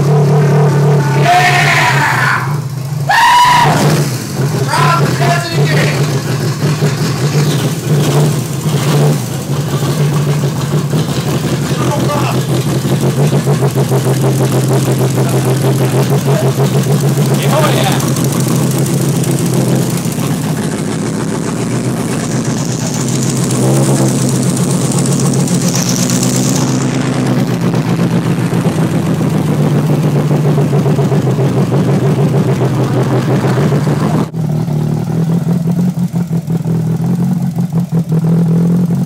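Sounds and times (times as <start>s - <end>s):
car engine revving: 0.0s - 39.0s.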